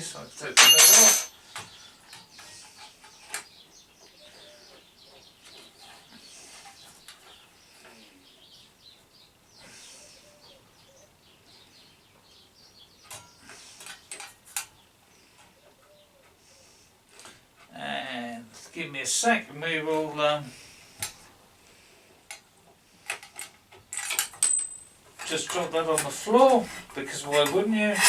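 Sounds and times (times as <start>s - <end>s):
faint birdsong: 0.0s - 28.0s
small metal parts clicking: 0.6s - 1.3s, 23.0s - 26.2s.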